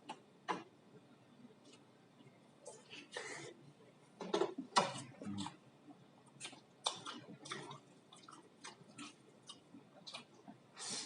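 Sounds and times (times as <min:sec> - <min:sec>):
person chewing food: 0:04.7 - 0:10.8.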